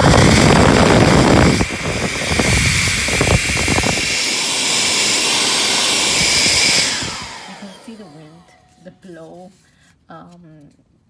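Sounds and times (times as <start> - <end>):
hair dryer blowing: 0.0 - 8.8.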